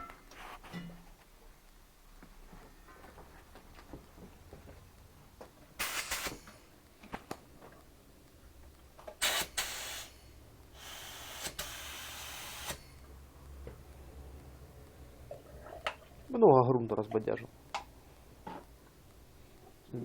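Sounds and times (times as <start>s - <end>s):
spray gun hissing compressed air: 5.8s - 6.5s, 9.2s - 13.0s.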